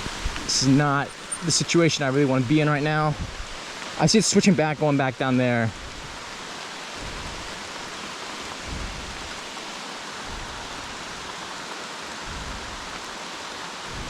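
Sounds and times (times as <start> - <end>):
heavy rain falling: 0.0 - 14.0
soft low rumbles: 7.0 - 11.4, 12.2 - 13.1.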